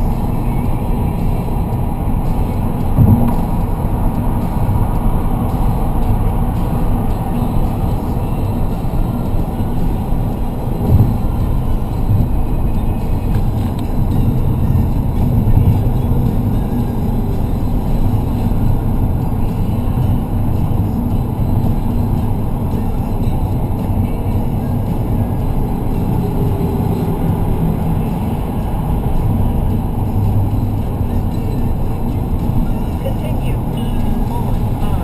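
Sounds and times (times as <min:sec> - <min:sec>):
car engine rumble: 0:00.0 - 0:35.0
road noise: 0:00.0 - 0:35.0.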